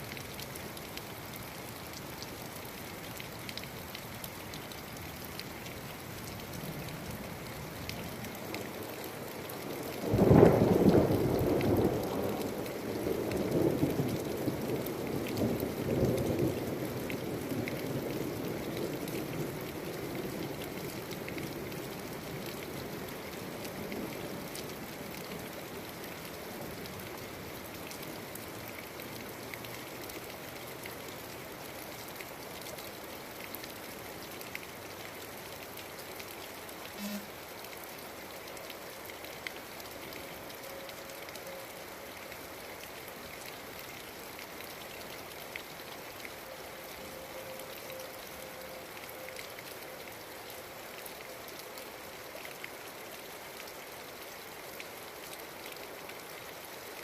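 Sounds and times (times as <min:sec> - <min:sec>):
steady rain falling: 0:00.0 - 0:57.0
thunderclap and rumbling thunder: 0:10.0 - 0:18.6.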